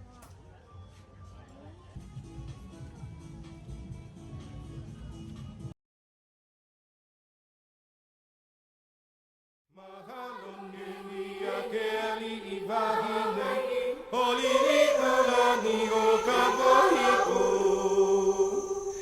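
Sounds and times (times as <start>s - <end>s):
choral chanting: 9.8s - 19.0s
low sustained drone: 13.0s - 19.0s.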